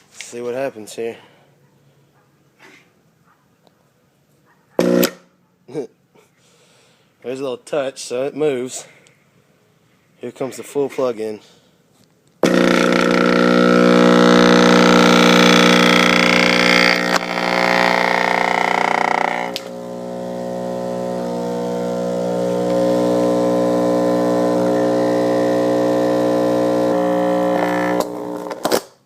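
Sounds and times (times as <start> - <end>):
subwoofer rattling buzz: 4.8 - 5.2, 12.4 - 28.8
loud harsh mains hum: 12.4 - 28.6.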